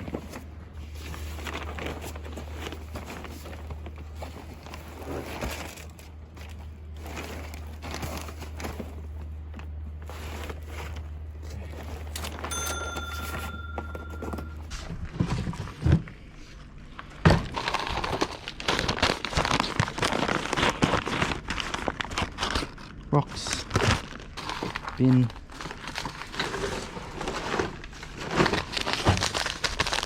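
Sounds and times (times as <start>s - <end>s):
rustling and crinkling of items: 0.0s - 30.0s
steady high tone: 12.5s - 14.7s.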